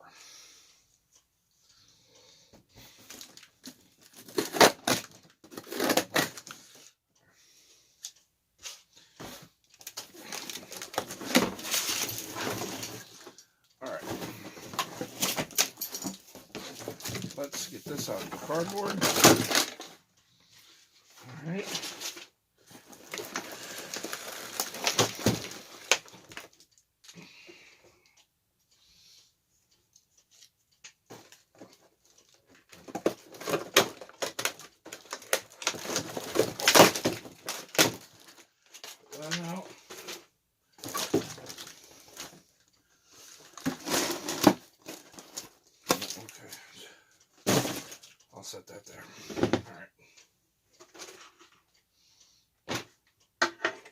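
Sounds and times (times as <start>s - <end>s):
packaging rustling and crinkling: 2.8s - 6.9s, 9.0s - 20.0s, 21.4s - 26.7s, 31.1s - 46.4s.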